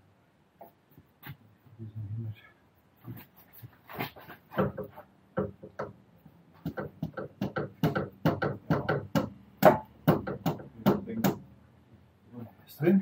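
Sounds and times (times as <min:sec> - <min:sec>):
sharp metallic knocks: 0:06.6 - 0:11.5.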